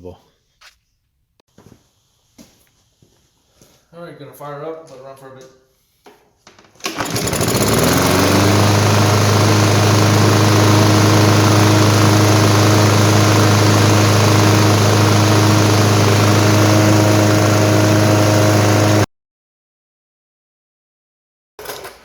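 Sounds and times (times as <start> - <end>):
lawn mower engine running: 6.8 - 19.1.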